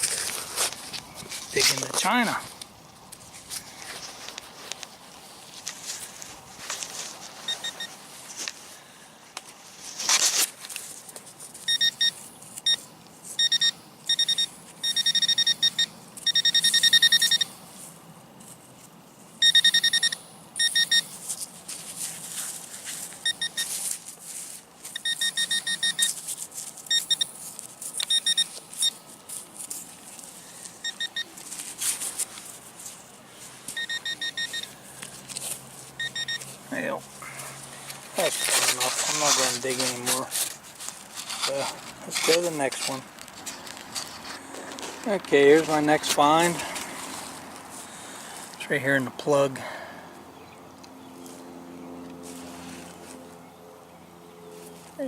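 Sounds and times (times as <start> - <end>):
digging in soil: 0.0 - 8.7, 20.7 - 49.6
metal detector beeps: 7.5 - 8.0, 11.6 - 12.8, 13.4 - 17.5, 19.4 - 21.2, 23.2 - 23.8, 24.9 - 26.2, 26.9 - 27.3, 28.0 - 29.0, 30.8 - 31.4, 33.7 - 34.8, 36.0 - 36.8, 38.2 - 39.5.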